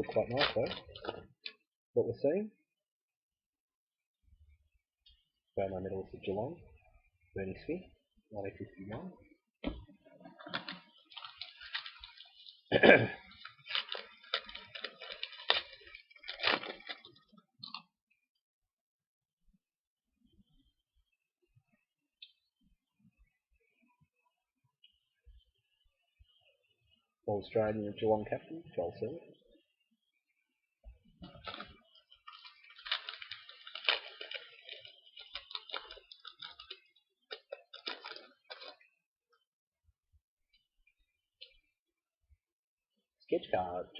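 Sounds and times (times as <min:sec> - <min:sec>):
foil wrapper crinkling: 0:00.0 - 0:01.6, 0:10.0 - 0:18.0, 0:31.2 - 0:39.0.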